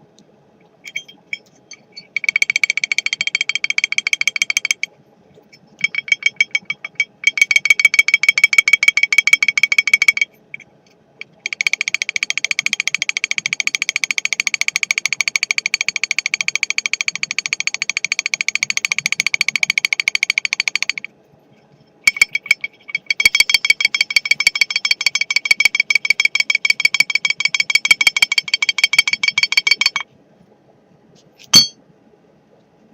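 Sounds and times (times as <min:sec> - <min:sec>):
moped engine metallic clatter: 0:00.8 - 0:04.9, 0:05.5 - 0:12.2, 0:22.0 - 0:30.0, 0:31.4 - 0:31.8.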